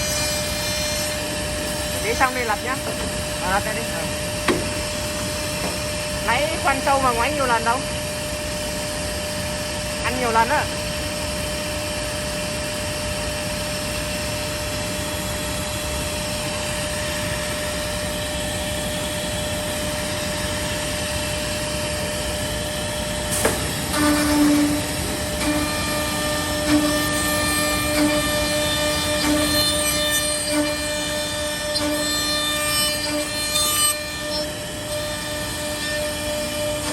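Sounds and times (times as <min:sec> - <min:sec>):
drill bit buzzing while cutting: 0:00.0 - 0:04.4, 0:20.0 - 0:36.9
machine spindle humming: 0:00.0 - 0:36.9.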